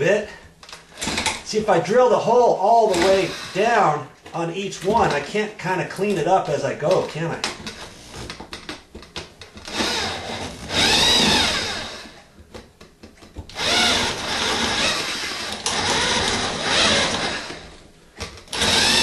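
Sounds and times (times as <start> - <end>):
electric drill boring into wood: 2.9 - 3.6, 9.6 - 12.2, 13.5 - 17.8, 18.5 - 19.0.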